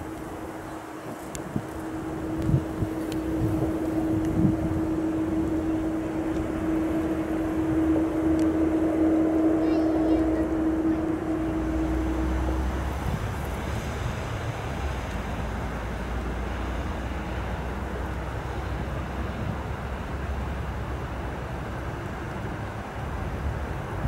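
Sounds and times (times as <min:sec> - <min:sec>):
train rumble: 0:00.0 - 0:24.0
held tone: 0:01.6 - 0:13.9.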